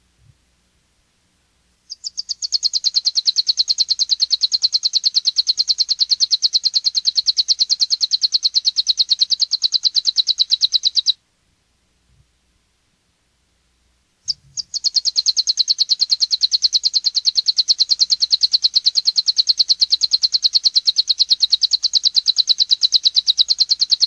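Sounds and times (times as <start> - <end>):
finch singing fast trill: 1.9 - 11.2, 14.3 - 24.0.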